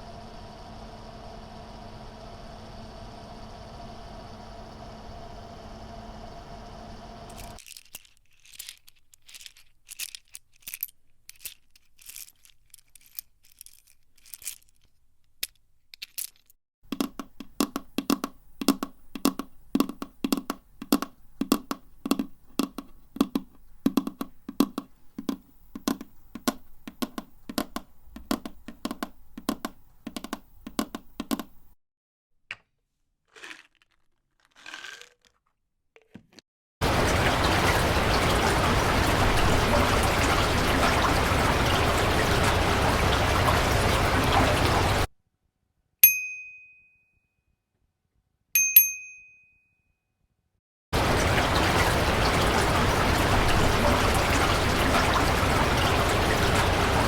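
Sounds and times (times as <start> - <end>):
rapid irregular clicks and crackles: 7.2 - 31.3.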